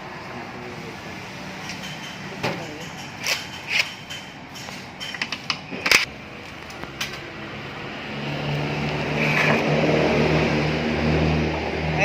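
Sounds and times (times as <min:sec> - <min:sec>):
hand tools clicking on metal: 0:01.6 - 0:06.1.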